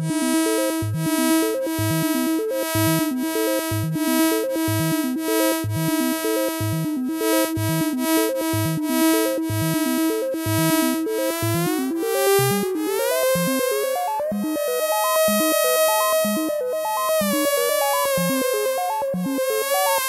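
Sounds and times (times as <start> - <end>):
analog synthesizer pattern: 5.7 - 20.0.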